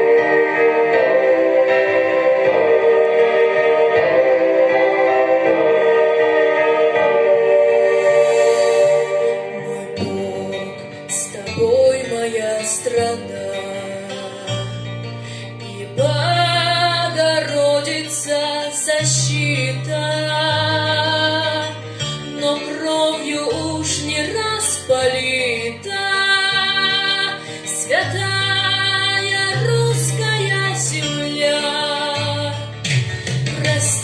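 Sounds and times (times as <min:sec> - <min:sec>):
wavering melody over bass: 0:00.0 - 0:18.1.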